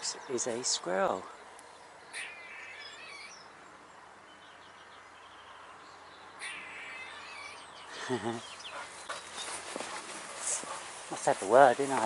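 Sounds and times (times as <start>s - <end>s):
squirrel chattering alarm calls: 2.0s - 3.6s, 6.3s - 8.8s.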